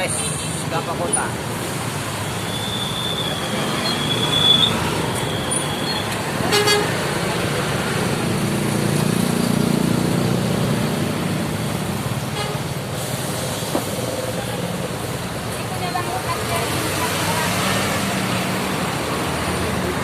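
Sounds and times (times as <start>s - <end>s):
road traffic: 0.0s - 20.0s
vehicle horn toot: 6.4s - 7.0s.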